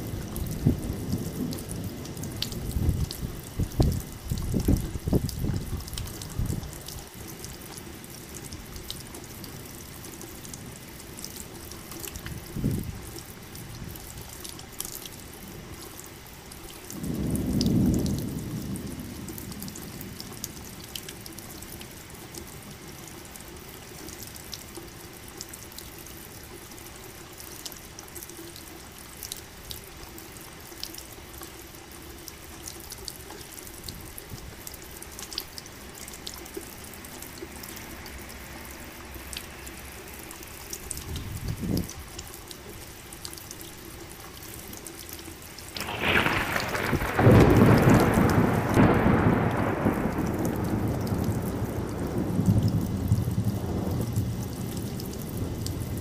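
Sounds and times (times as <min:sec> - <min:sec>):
low thunder rumbles: 0:00.0 - 0:06.9, 0:11.7 - 0:14.1, 0:16.9 - 0:21.3, 0:40.8 - 0:42.1, 0:45.8 - 0:56.0
raindrops ticking: 0:00.0 - 0:56.0
steady rain: 0:00.0 - 0:56.0.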